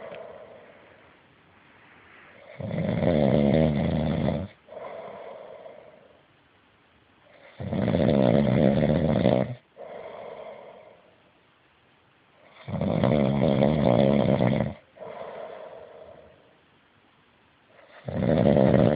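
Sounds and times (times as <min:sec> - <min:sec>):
person snoring: 0:00.0 - 0:00.8, 0:02.4 - 0:06.2, 0:07.4 - 0:11.0, 0:12.5 - 0:16.5, 0:17.8 - 0:18.9
soft breath out: 0:00.0 - 0:02.5, 0:15.0 - 0:16.6.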